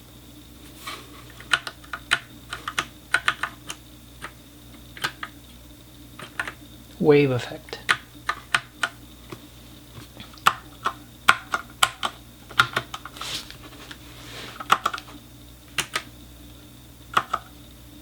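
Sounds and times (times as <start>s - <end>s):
mechanical keyboard keystrokes: 1.5s - 4.4s, 6.2s - 6.6s, 10.4s - 13.0s, 15.8s - 16.1s, 17.1s - 17.5s.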